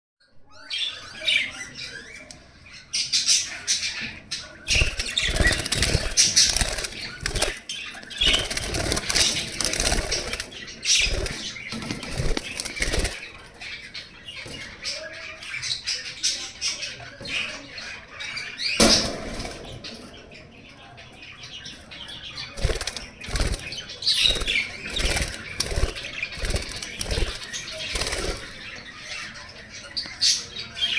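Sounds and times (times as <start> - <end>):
birds chirping: 0.2 - 30.9
birds flapping wings: 4.7 - 13.3, 22.6 - 28.8.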